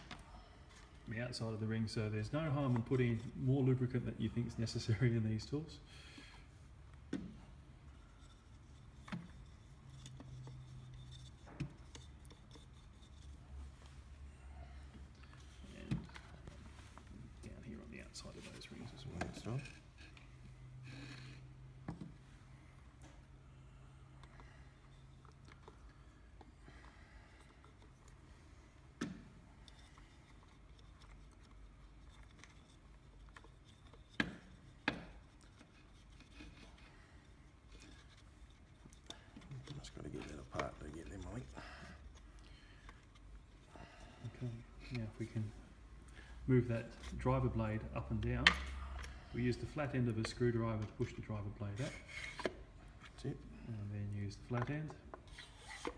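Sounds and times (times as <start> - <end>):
fiddling with stapler parts: 51.8 - 53.2.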